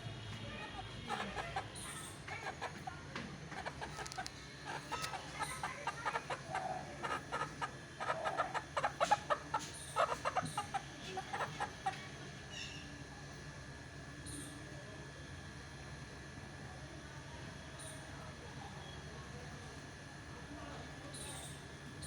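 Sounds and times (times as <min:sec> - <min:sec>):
rooster clucking: 0:00.7 - 0:12.1.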